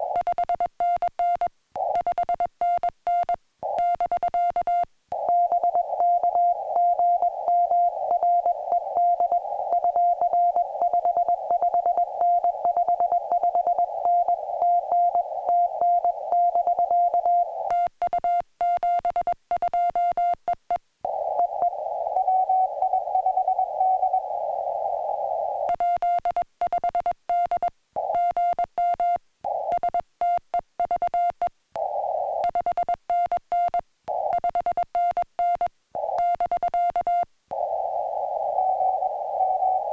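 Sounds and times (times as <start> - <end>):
radio receiver hiss: 5.2 - 17.8, 21.1 - 25.8, 31.8 - 32.6, 34.1 - 34.4, 37.5 - 39.9.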